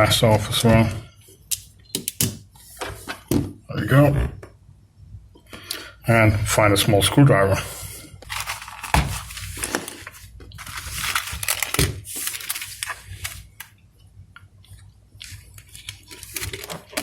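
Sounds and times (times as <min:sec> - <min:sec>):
rummaging through small tools: 0:08.2 - 0:13.4.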